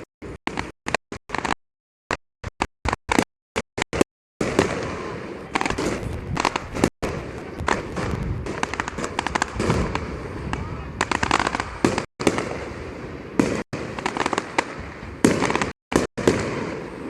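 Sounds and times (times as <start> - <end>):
street crowd noise: 4.4 - 11.8
firecracker bangs: 4.4 - 17.0.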